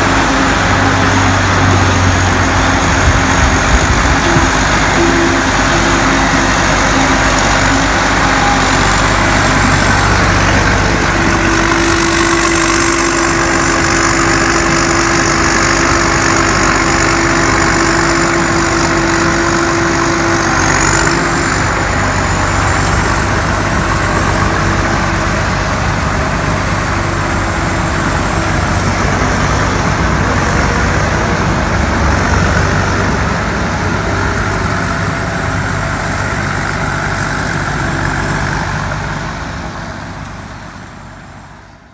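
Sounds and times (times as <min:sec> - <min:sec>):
diesel engine running loudly: 0:00.0 - 0:41.9.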